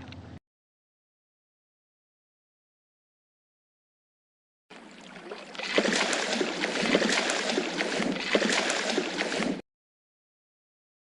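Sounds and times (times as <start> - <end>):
water splashing and gurgling: 4.7 - 9.6.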